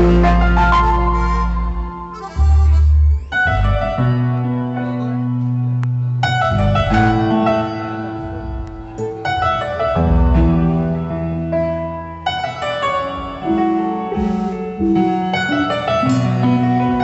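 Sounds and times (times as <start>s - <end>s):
deep bass notes: 0.0s - 12.4s
keyboard chords: 0.0s - 17.0s.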